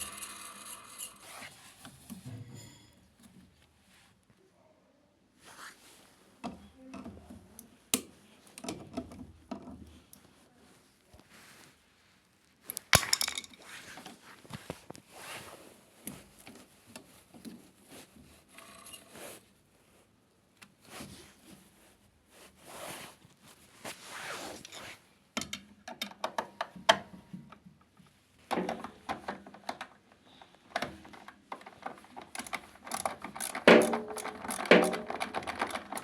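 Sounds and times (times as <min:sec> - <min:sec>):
tools knocking clicking and scraping: 0:12.7 - 0:13.7, 0:30.7 - 0:36.0.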